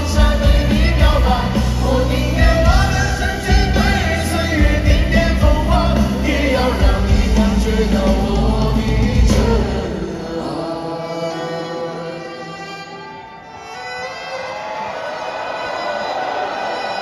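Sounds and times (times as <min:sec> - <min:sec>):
live band with heavy bass: 0:00.0 - 0:10.4
crowd cheering: 0:13.0 - 0:17.0.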